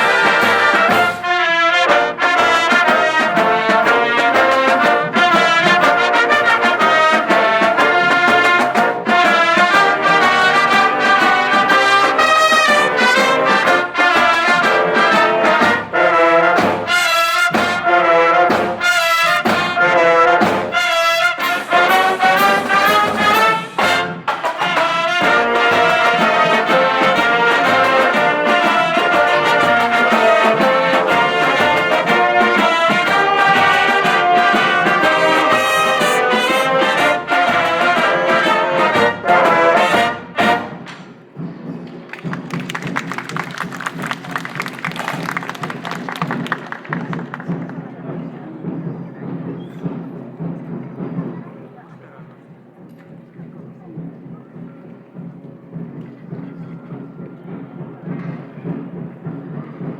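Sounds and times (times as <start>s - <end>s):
sharp percussion hits: 0.0s - 47.4s
marching band playing brass music: 0.0s - 59.9s.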